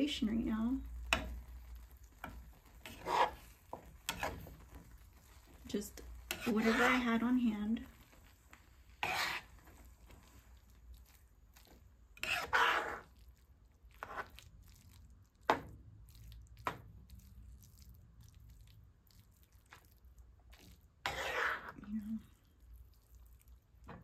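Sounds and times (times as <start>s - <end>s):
person chewing noodles: 13.0s - 15.4s, 16.0s - 20.9s.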